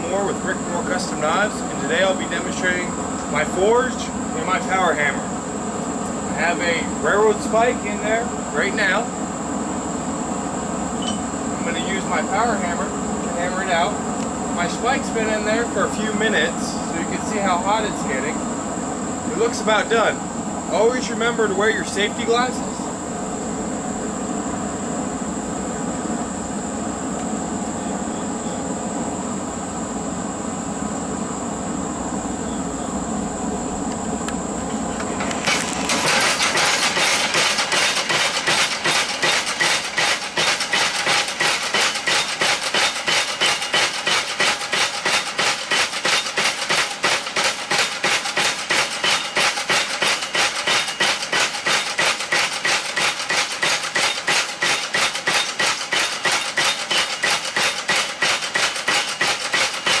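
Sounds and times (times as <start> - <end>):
power hammer pounding hot metal: 35.2 - 60.0.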